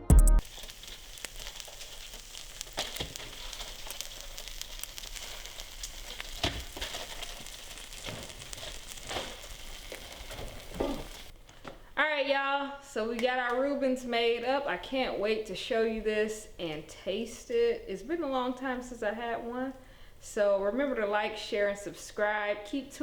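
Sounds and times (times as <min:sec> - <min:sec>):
butter sizzling in a frying pan: 0:00.4 - 0:11.4.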